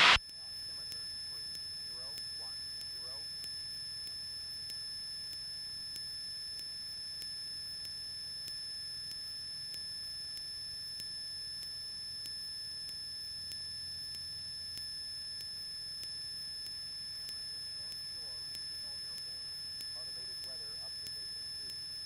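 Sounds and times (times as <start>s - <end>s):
low hum: 0.0s - 0.2s
high-pitched electrical whine: 0.0s - 3.2s, 17.3s - 22.0s
faint regular ticks: 0.3s - 22.0s.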